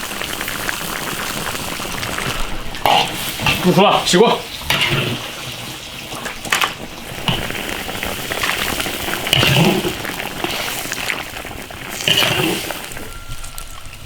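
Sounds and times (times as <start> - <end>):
metal ladle scraping stew: 2.8 - 5.6, 9.2 - 11.2, 11.8 - 13.6.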